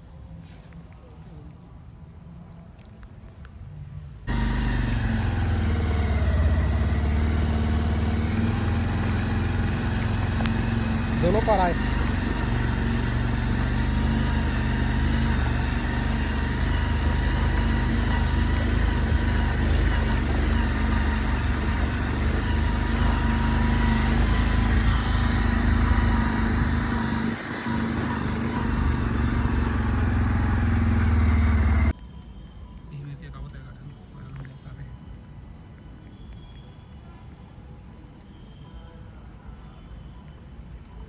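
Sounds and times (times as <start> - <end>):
diesel engine running: 4.2 - 31.9.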